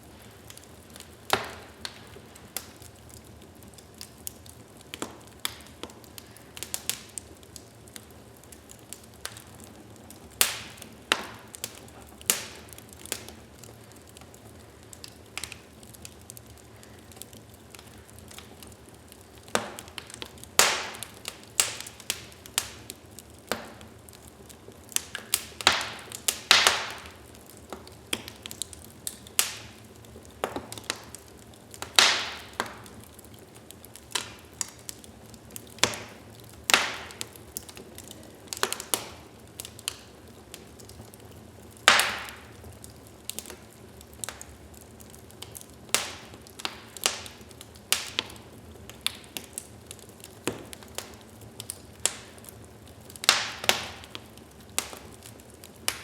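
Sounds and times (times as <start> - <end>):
low steady hiss: 0.0 - 56.0
wood fire crackling and popping: 0.0 - 56.0.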